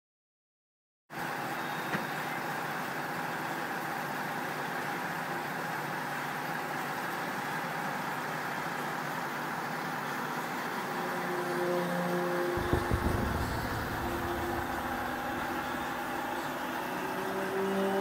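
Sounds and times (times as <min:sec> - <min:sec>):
steady droning noise: 0:12.4 - 0:18.0.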